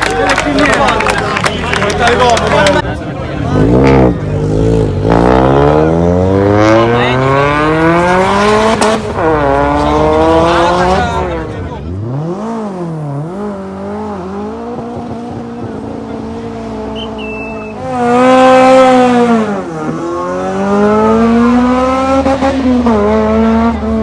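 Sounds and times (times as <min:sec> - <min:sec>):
car engine revving: 0:01.4 - 0:24.0
tyre squeal: 0:16.9 - 0:17.9.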